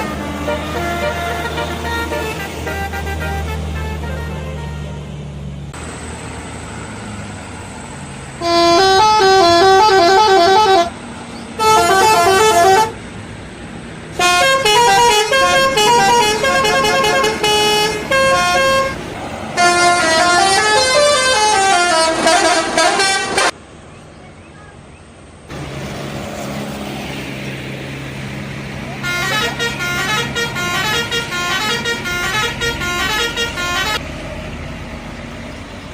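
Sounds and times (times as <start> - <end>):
bus horn playing tunes: 0.0 - 5.2, 8.4 - 11.0, 11.6 - 13.0, 14.2 - 23.6, 29.0 - 34.0.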